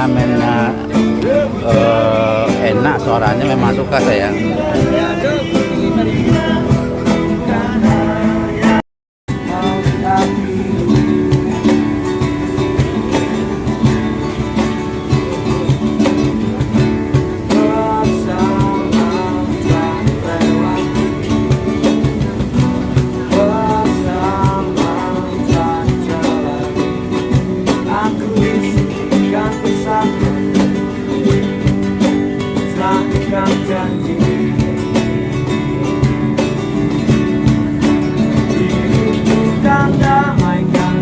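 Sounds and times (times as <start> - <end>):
person singing: 0.0 - 11.5, 17.4 - 31.7, 32.5 - 35.8, 38.3 - 41.0
strummed acoustic guitar: 0.0 - 41.0.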